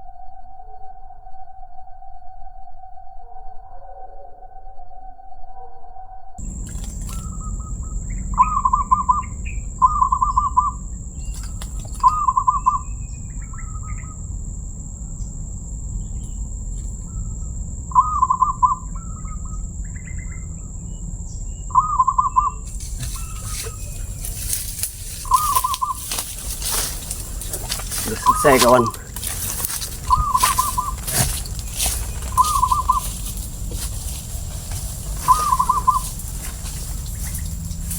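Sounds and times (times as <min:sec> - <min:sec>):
dove cooing: 0:06.4 - 0:37.9
thin steady high tone: 0:06.4 - 0:37.9
clicks and rustling: 0:11.3 - 0:12.2, 0:22.7 - 0:37.9.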